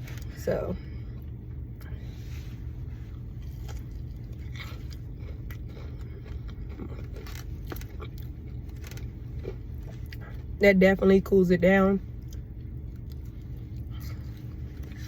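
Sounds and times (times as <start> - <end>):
steady low hum: 0.0 - 15.0
chewing crispy food crunches: 3.2 - 10.6.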